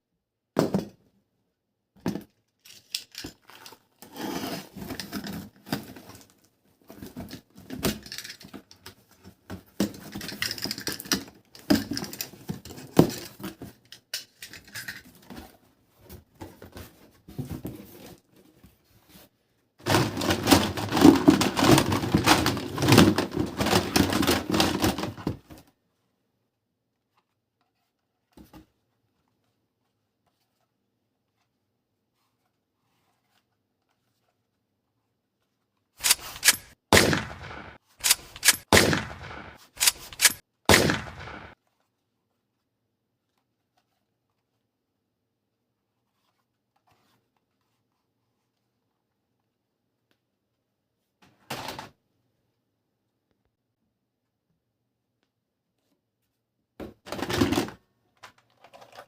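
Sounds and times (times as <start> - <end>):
plastic rustling and scraping: 15.0 - 25.8, 57.0 - 59.0.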